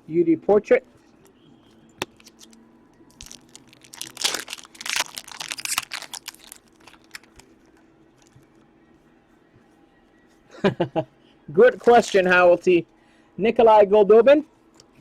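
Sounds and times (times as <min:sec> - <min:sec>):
plastic packaging crinkling: 0:02.0 - 0:08.4, 0:11.7 - 0:12.3.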